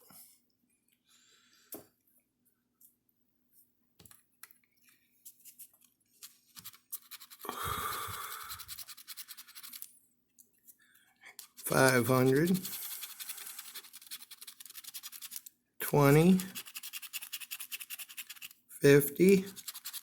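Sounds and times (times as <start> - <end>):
coin scratching lottery ticket: 6.5 - 7.5, 8.1 - 9.8, 11.6 - 20.0.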